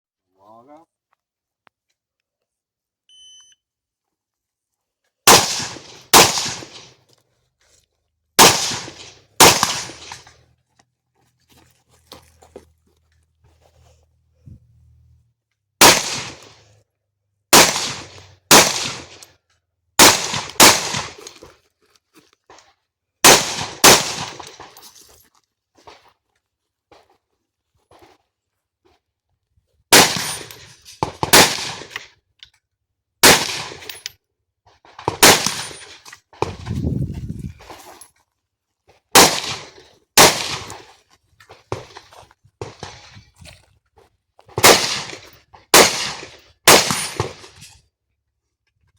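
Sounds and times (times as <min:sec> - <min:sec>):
shot timer beep: 0:03.1 - 0:03.6
rifle shots: 0:05.2 - 0:07.0, 0:08.4 - 0:10.3, 0:15.8 - 0:16.6, 0:17.5 - 0:19.3, 0:20.0 - 0:21.3, 0:23.2 - 0:24.8, 0:29.9 - 0:32.0, 0:33.2 - 0:33.9, 0:35.0 - 0:36.7, 0:39.1 - 0:40.9, 0:44.6 - 0:47.6.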